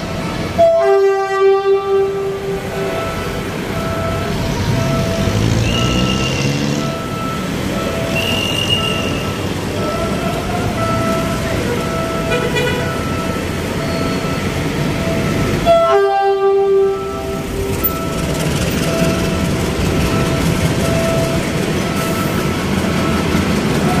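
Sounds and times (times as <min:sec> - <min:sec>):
street traffic: 0:00.0 - 0:24.0
electronic beeping: 0:02.8 - 0:15.6, 0:17.0 - 0:23.4.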